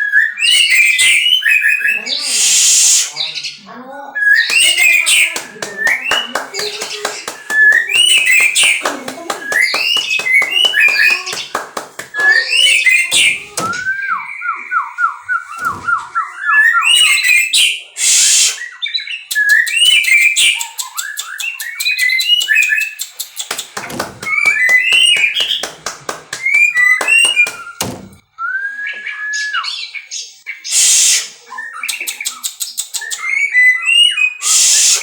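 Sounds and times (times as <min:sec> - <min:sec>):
bird singing whistled phrases: 0:00.0 - 0:03.3, 0:04.1 - 0:25.7, 0:26.4 - 0:35.0
sharp bird clicks: 0:04.4 - 0:13.9, 0:19.3 - 0:28.2, 0:31.8 - 0:33.4.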